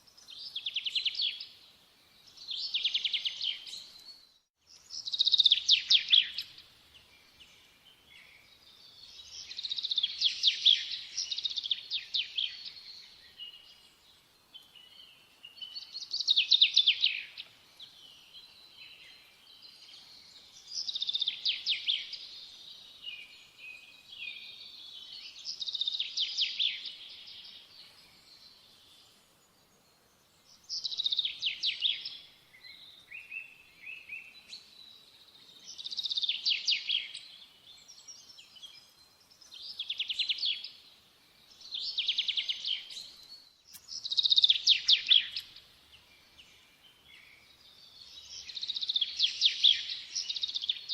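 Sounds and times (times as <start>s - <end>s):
bird chirps: 0.1s - 50.9s
songbird trilling: 43.7s - 45.5s.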